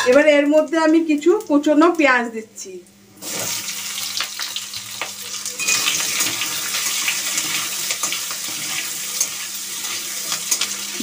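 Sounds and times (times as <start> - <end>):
onions sizzling in oil: 2.9 - 11.0
spatula scraping pan: 5.6 - 10.7.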